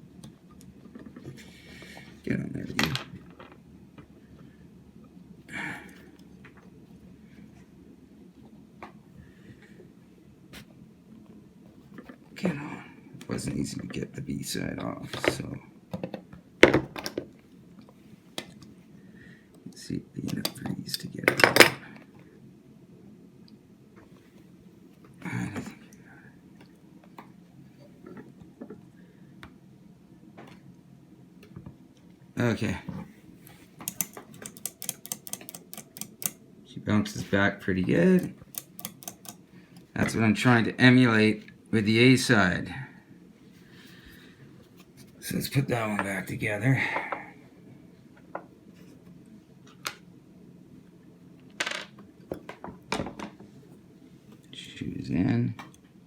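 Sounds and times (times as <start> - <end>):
low steady hum: 0.0 - 56.0
small metal clicks and taps: 33.8 - 36.4, 38.2 - 39.4.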